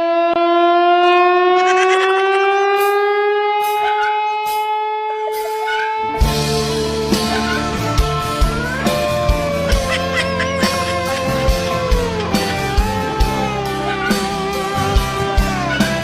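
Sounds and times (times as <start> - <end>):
music with heavy beat: 5.4 - 16.0.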